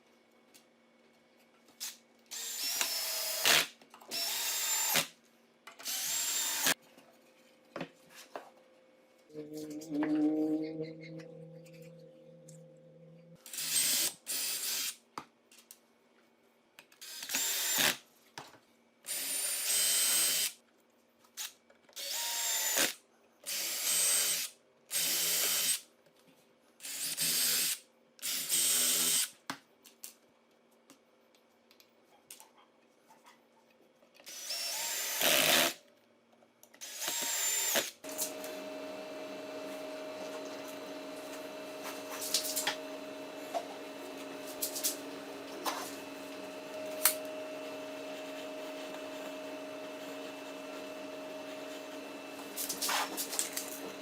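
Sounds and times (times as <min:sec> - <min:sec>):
electric drill bursts: 0:02.3 - 0:05.1, 0:05.8 - 0:06.8, 0:13.5 - 0:14.9, 0:17.0 - 0:17.9, 0:22.0 - 0:22.9, 0:34.3 - 0:35.8, 0:36.8 - 0:54.0.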